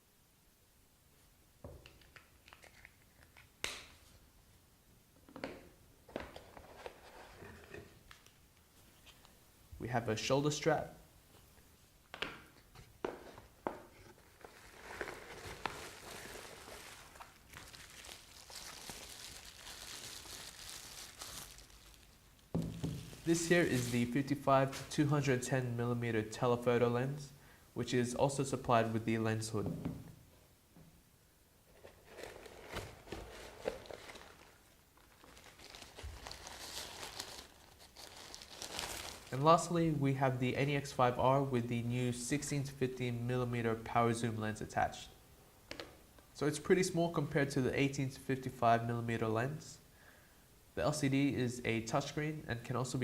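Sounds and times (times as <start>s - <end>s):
packaging rustling: 14.0s - 24.9s, 31.8s - 39.4s.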